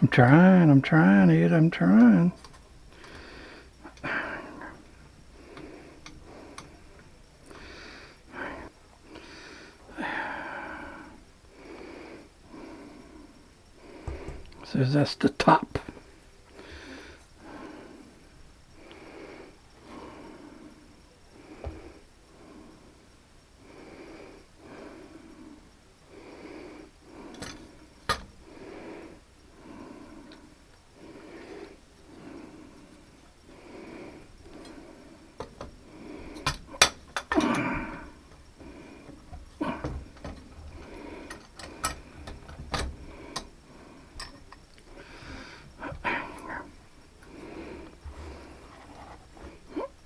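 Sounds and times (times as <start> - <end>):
person breathing heavily: 2.9 - 14.6, 16.5 - 50.0
metal parts clicking and knocking: 27.3 - 28.4, 35.4 - 38.4, 39.1 - 44.8.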